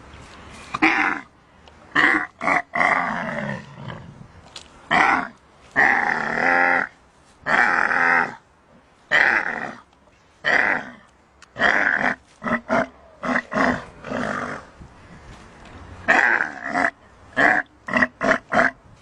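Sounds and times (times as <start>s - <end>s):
camel calling loudly: 0.8s - 1.3s, 1.9s - 4.2s, 4.9s - 8.4s, 9.1s - 14.7s, 16.0s - 18.9s.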